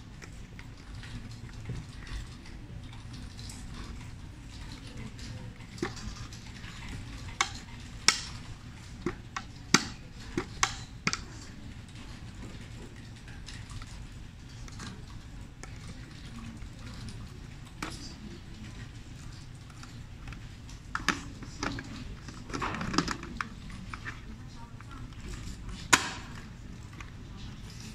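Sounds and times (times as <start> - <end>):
plastic clicks and knocks: 5.0 - 11.4, 19.7 - 27.9.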